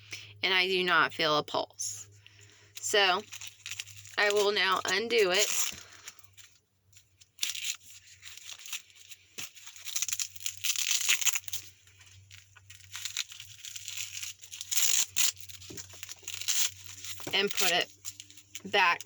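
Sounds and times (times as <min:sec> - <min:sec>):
hook-and-loop strap tearing: 0:03.2 - 0:04.8, 0:05.4 - 0:19.0.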